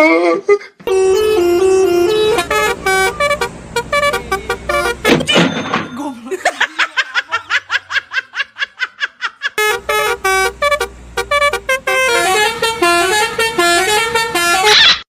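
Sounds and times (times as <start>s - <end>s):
multi-tone bus horn: 0.8s - 5.4s, 9.6s - 15.0s.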